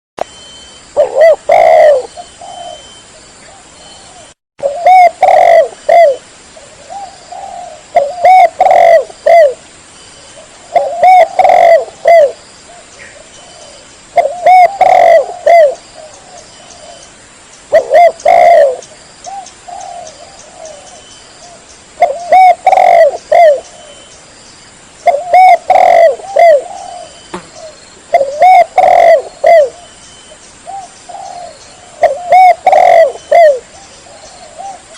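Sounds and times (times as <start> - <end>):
dove cooing: 1.0 - 9.6, 10.4 - 17.1, 17.7 - 24.1, 25.0 - 30.0, 30.6 - 34.9.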